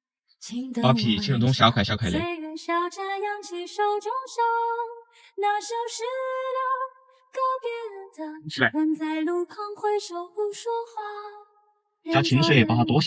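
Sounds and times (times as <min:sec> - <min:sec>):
high voice singing slowly: 0:00.5 - 0:02.4, 0:12.1 - 0:13.0.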